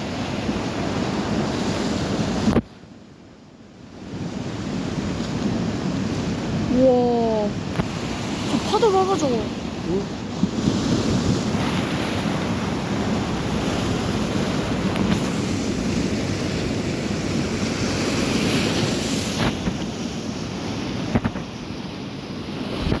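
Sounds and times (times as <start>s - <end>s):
sea waves breaking: 0.0s - 2.9s, 3.8s - 23.0s
wind buffeting microphone: 4.1s - 21.9s.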